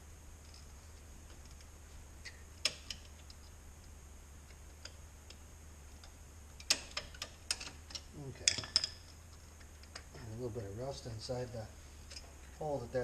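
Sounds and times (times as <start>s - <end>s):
metal taps and clinks: 6.6s - 9.1s.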